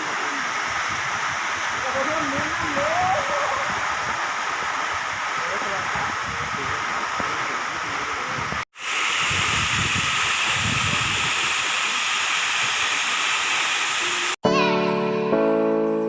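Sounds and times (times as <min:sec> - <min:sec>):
waterfall rushing: 0:00.0 - 0:14.4.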